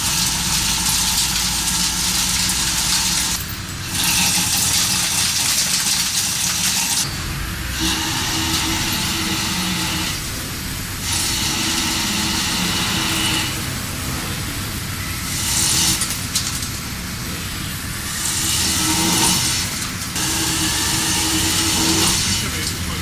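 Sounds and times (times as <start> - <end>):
machine low hum: 0.0 - 23.0
loud hiss: 7.0 - 23.0.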